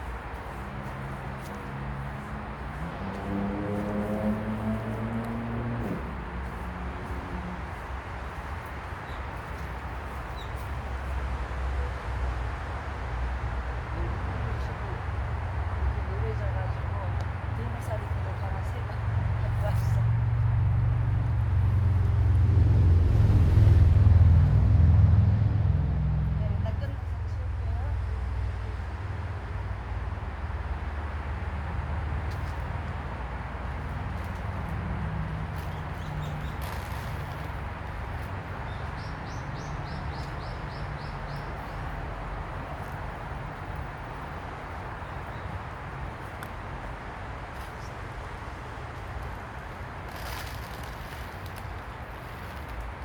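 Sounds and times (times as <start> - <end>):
outdoor background rumble: 0.0 - 53.0
vehicle engine running: 17.3 - 28.7.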